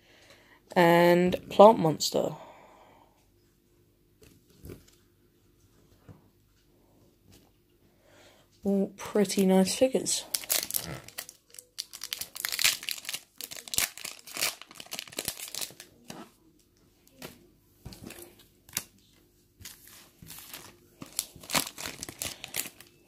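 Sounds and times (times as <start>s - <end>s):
foil wrappers crinkling and tearing: 9.3s - 16.2s, 18.0s - 23.0s.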